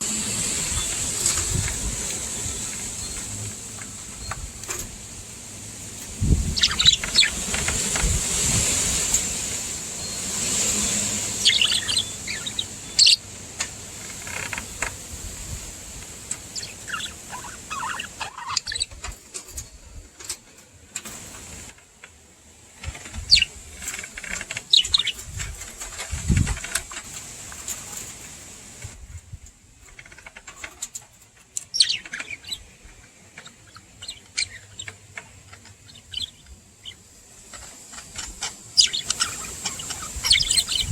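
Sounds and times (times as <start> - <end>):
steady high hiss: 0.0 - 29.8, 31.3 - 40.9
budgerigars chirping and chattering: 5.9 - 15.6, 16.2 - 19.2, 23.1 - 27.0, 31.6 - 40.9.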